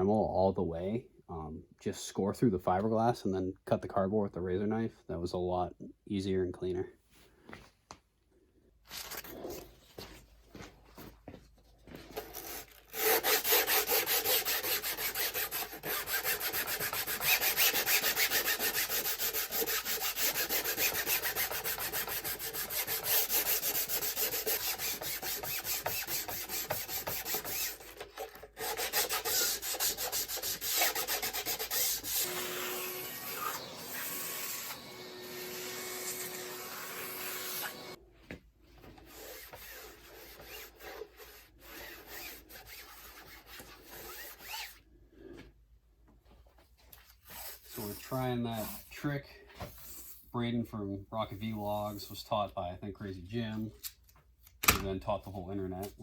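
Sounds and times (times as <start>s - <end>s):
scratchy hand sanding strokes: 12.3s - 38.0s, 39.0s - 44.8s, 47.2s - 49.1s.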